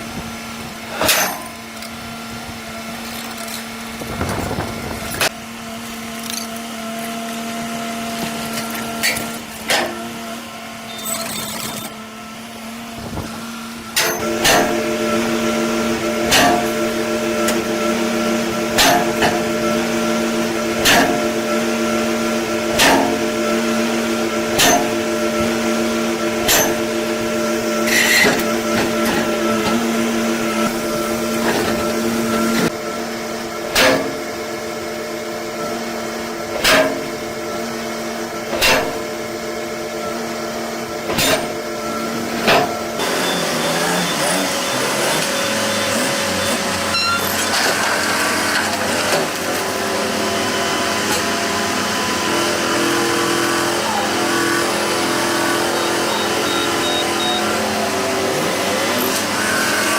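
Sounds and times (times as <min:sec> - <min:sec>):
machine humming: 0:00.0 - 0:18.7.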